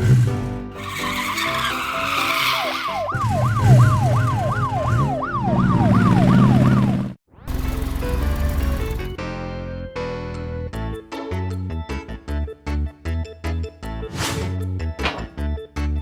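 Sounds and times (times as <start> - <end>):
cartoon screeching whoosh: 0.8 - 3.2
siren wailing up and down: 1.0 - 7.2.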